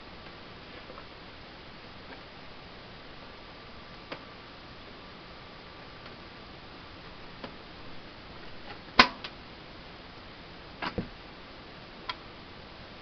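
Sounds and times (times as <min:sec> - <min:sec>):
steady hiss: 0:00.0 - 0:13.0.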